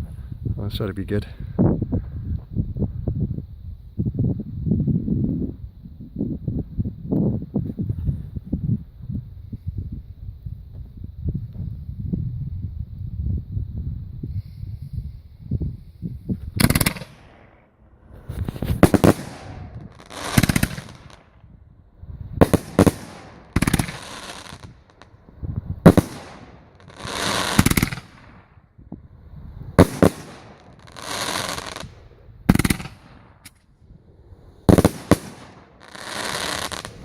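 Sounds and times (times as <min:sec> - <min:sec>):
fireworks banging: 0:16.6 - 0:21.4, 0:22.4 - 0:25.2, 0:25.8 - 0:28.5, 0:29.8 - 0:33.7, 0:34.6 - 0:37.0.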